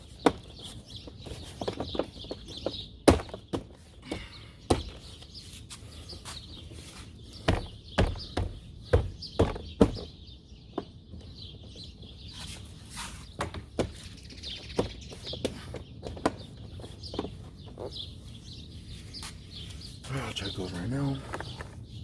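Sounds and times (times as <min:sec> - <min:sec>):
birds chirping: 0:00.0 - 0:22.0
knocks on car door panel: 0:07.5 - 0:10.1.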